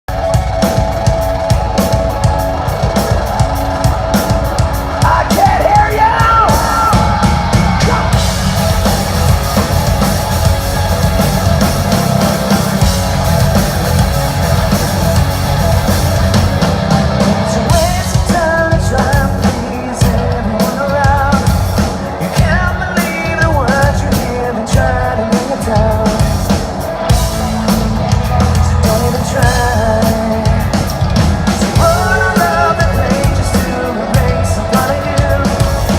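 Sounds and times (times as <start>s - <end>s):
live rock band playing: 0.1s - 35.9s
person singing: 4.1s - 10.0s, 17.2s - 35.9s.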